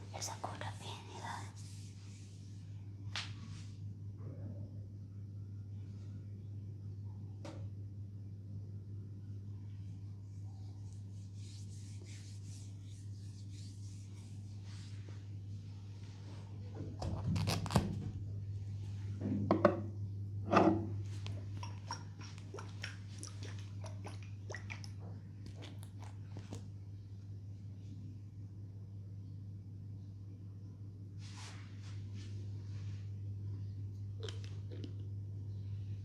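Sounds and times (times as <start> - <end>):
steady low hum: 0.0 - 36.0
oiled hands rubbing skin: 0.7 - 3.7, 10.3 - 15.4.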